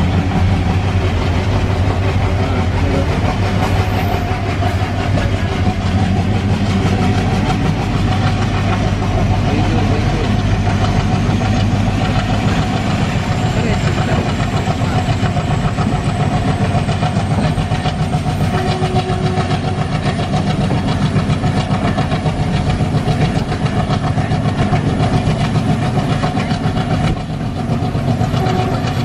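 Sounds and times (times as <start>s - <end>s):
diesel locomotive engine chugging: 0.0s - 29.0s
wheels running on rails: 0.0s - 29.0s.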